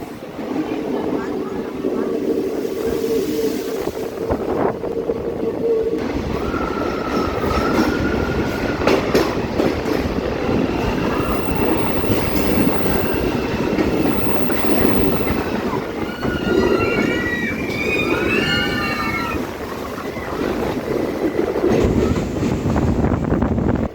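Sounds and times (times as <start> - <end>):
train wheels rumbling on track: 0.0 - 23.9
high-pitched wheel squeal: 10.5 - 19.4.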